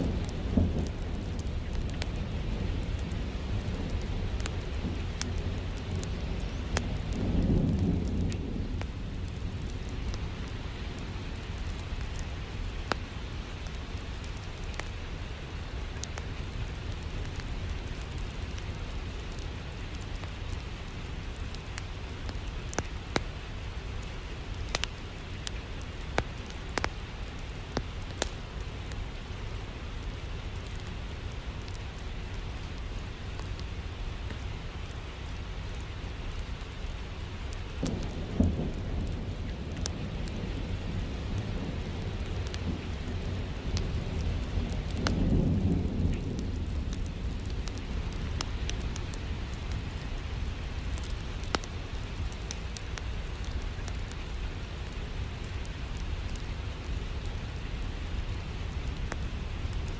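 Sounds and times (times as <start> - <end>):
low rumble of thunder: 0.0 - 24.9, 37.8 - 59.9
steady rain: 0.0 - 59.9
wood fire crackling: 0.0 - 59.9.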